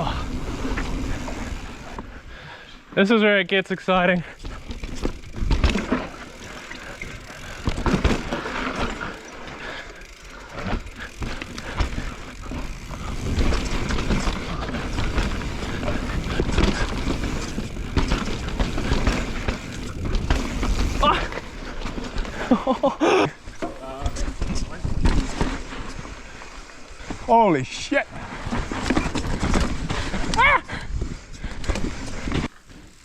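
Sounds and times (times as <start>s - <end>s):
bike tyres rattling over dirt: 0.0s - 33.0s
bike chain and frame clattering: 4.2s - 30.8s.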